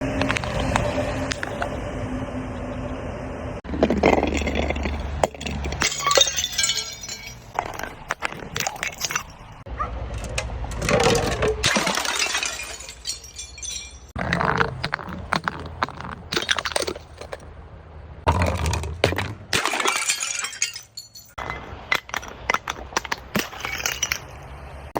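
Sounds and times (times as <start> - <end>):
glass bottles breaking: 3.7 - 9.6, 11.0 - 17.4, 18.3 - 24.4
glass shards clinking: 3.7 - 9.6, 10.9 - 14.4, 19.5 - 24.4.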